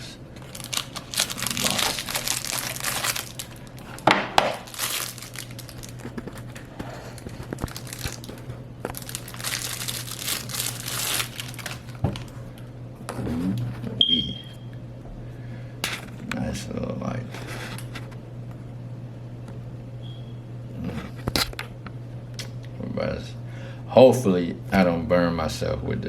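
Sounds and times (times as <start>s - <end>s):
packaging crinkling: 0.3s - 12.4s.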